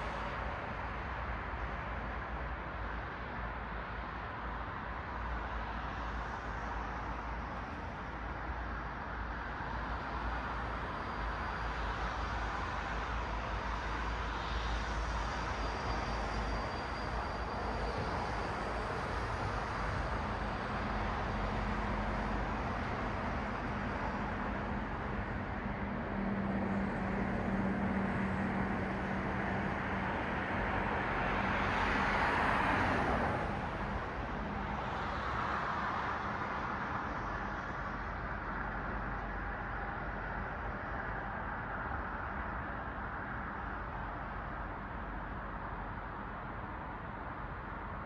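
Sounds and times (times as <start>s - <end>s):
road traffic noise: 9.2s - 48.0s
cars passing: 25.9s - 41.3s.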